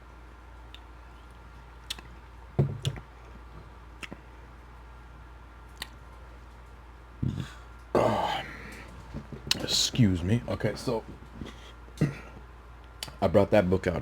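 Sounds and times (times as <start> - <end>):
steady low hum: 0.0 - 14.0
wet mouth clicks eating: 1.8 - 2.1, 4.0 - 4.2.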